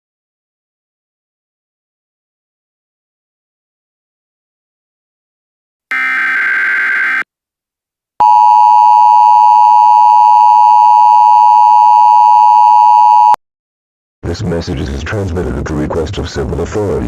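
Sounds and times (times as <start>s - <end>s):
harsh electronic data screech: 5.9s - 7.2s
loud steady alert beep: 8.2s - 13.4s.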